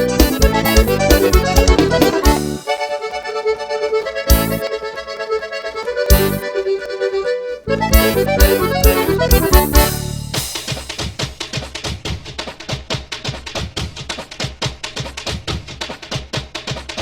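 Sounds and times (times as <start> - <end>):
band hits: 0.0 - 3.0, 7.8 - 12.7
accordion melody: 0.0 - 11.2
dance band with bass and drums: 0.0 - 17.0.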